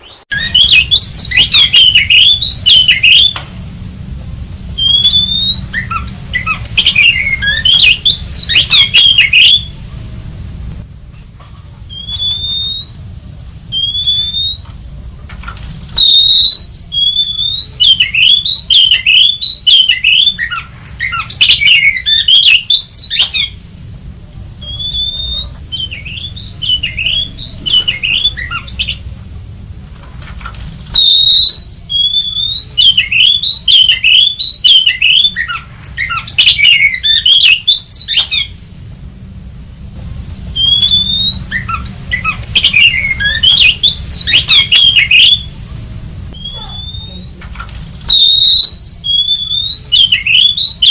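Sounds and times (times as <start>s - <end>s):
bird whistling song: 0.0s - 3.4s, 4.8s - 9.8s, 11.9s - 13.0s, 13.7s - 14.7s, 16.0s - 23.6s, 24.6s - 29.1s, 30.9s - 38.6s, 40.5s - 45.6s, 46.3s - 47.4s, 48.1s - 50.9s.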